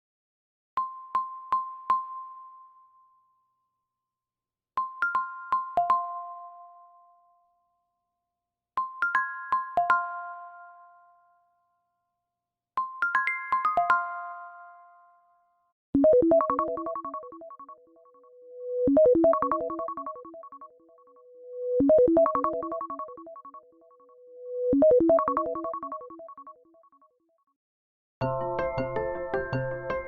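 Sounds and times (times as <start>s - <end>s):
phone ringtone: 16.1s - 18.2s, 18.9s - 21.0s, 21.9s - 23.9s.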